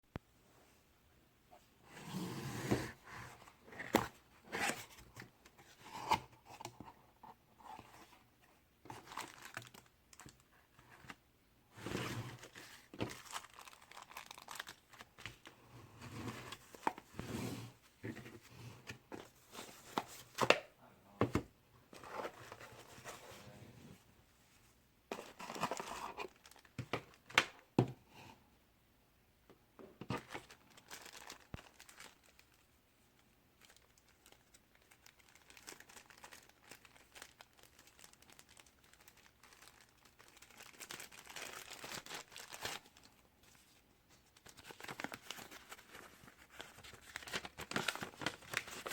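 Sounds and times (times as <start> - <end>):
packaging being opened by hand: 12.4 - 15.5, 44.4 - 48.9.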